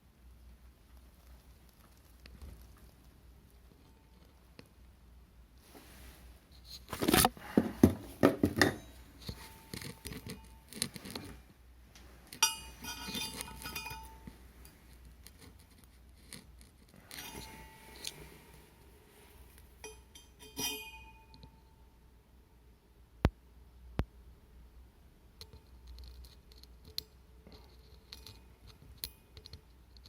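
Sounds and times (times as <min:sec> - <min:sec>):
metallic clinks ringing: 0:12.4 - 0:14.4, 0:19.8 - 0:21.7.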